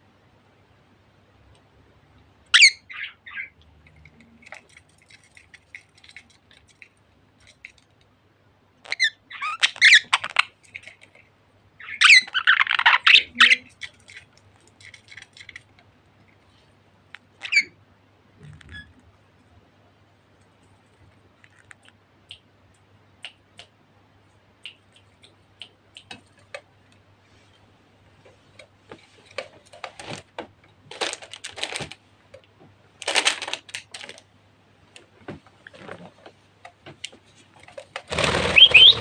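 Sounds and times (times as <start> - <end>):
budgerigars chirping and squawking: 2.6 - 3.5, 11.8 - 13.8, 38.2 - 39.0.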